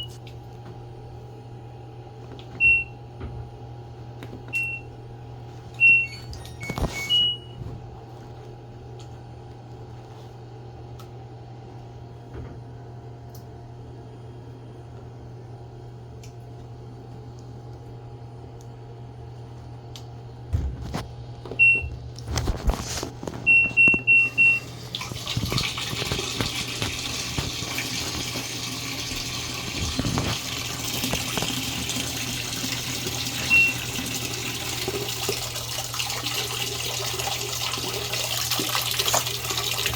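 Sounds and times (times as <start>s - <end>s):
water rushing into drum: 24.5s - 39.9s.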